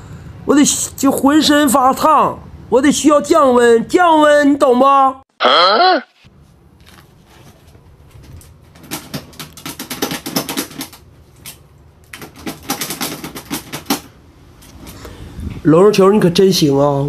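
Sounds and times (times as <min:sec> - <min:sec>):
rapid clicking and rattling: 0:08.1 - 0:14.2.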